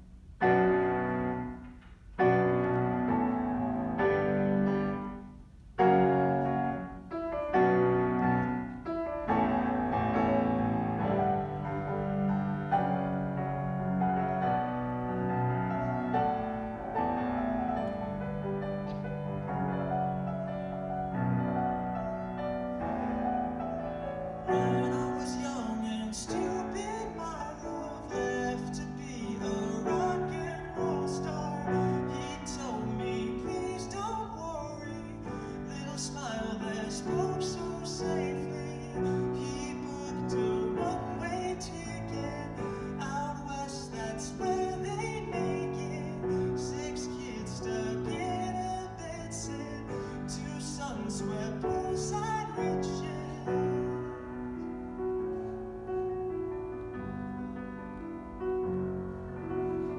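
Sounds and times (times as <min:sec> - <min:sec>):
piano chords: 0:00.0 - 0:59.9
person singing: 0:24.4 - 0:54.8.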